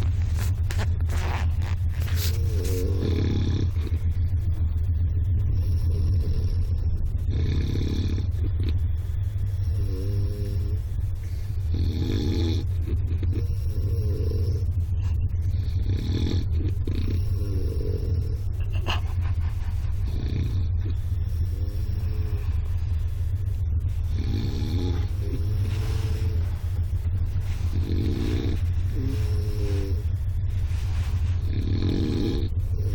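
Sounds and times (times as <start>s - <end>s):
person snoring: 0.0s - 4.0s, 5.5s - 8.8s, 9.5s - 11.0s, 11.6s - 14.7s, 15.5s - 18.8s, 19.9s - 22.9s, 24.0s - 30.2s, 31.4s - 32.9s
train rumble: 0.0s - 32.9s.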